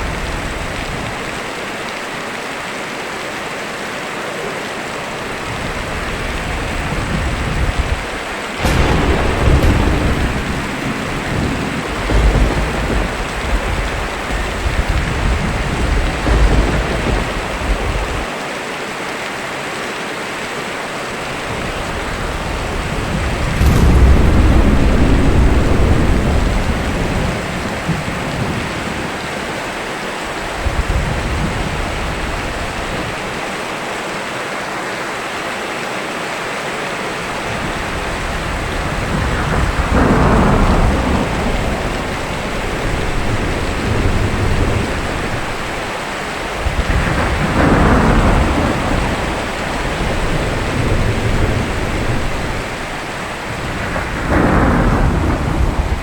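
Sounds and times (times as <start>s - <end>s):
steady rain: 0.0s - 56.0s
sharp thunderclaps: 6.0s - 18.3s, 21.6s - 33.4s, 37.3s - 56.0s
thunder rumbling low: 6.0s - 18.3s, 21.8s - 33.4s, 37.5s - 56.0s.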